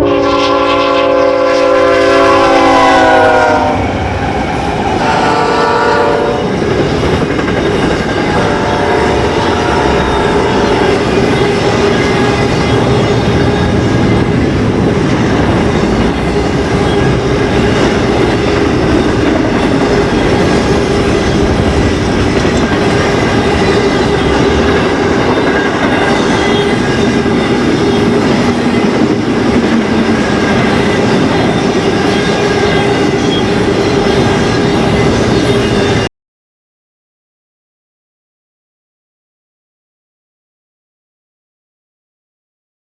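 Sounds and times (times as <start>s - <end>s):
train wheels rumbling on track: 0.1s - 36.1s.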